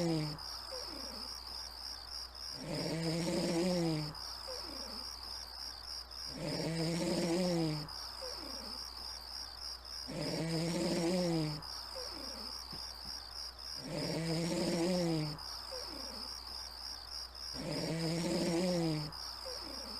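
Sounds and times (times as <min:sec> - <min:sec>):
person snoring: 0:00.0 - 0:00.4, 0:02.6 - 0:05.0, 0:06.3 - 0:08.7, 0:10.1 - 0:11.6, 0:13.8 - 0:16.2, 0:17.5 - 0:19.9
crickets chirping: 0:00.0 - 0:19.9.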